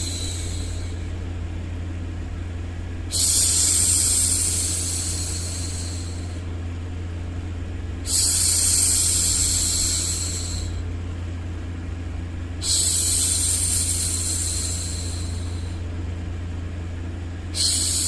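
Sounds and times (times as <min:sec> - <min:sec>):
low white-noise hum: 0:00.0 - 0:18.0
woman shushing: 0:17.6 - 0:18.0.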